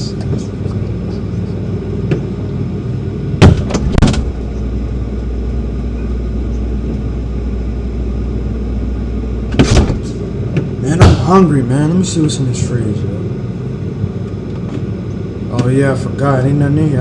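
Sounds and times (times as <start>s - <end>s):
steady low hum: 0.0s - 17.0s
refrigerator door thuds: 3.4s - 4.4s, 9.5s - 11.4s.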